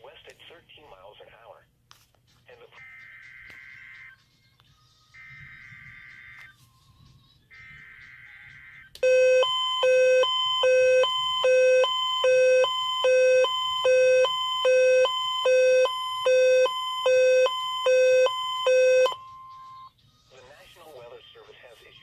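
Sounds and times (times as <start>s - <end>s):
two-tone alert tone: 9.0s - 19.9s.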